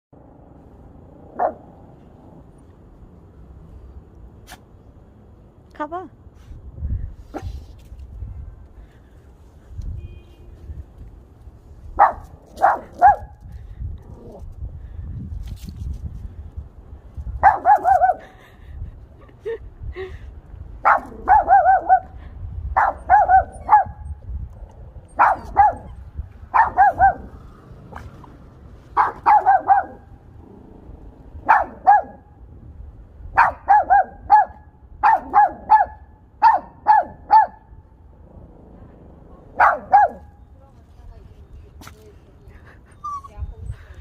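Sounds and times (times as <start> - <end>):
small dog barking high-pitched: 1.4 - 1.6, 12.0 - 13.3, 17.4 - 18.2, 20.8 - 22.1, 22.8 - 24.0, 25.2 - 27.3, 29.0 - 30.0, 31.4 - 32.2, 33.4 - 37.7, 39.6 - 40.3.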